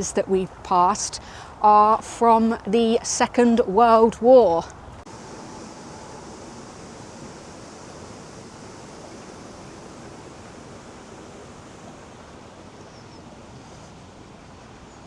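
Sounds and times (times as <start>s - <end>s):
steady rushing background noise: 5.0s - 15.0s
faint bird chirps: 12.7s - 13.9s.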